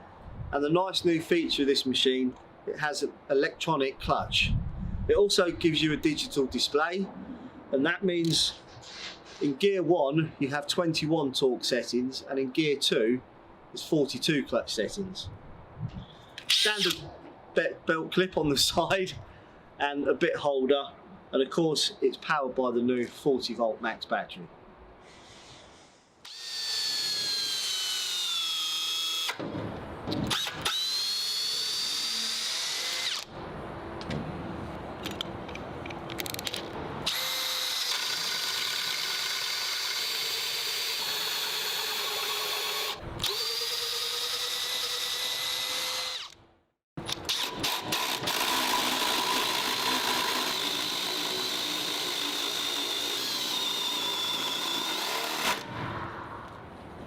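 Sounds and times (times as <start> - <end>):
drill motor whine: 30.3 - 33.3, 37.1 - 46.4.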